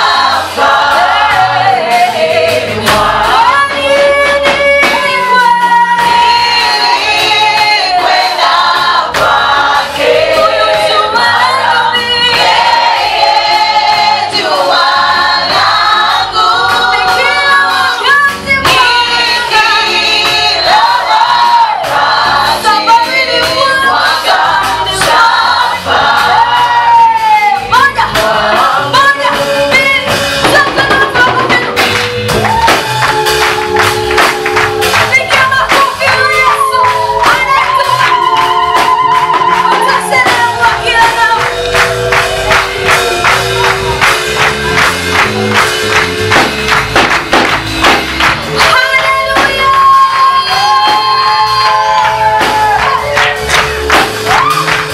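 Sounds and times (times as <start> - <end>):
mixed choir singing a hymn: 0.0 - 30.5, 36.4 - 44.8, 48.6 - 53.4.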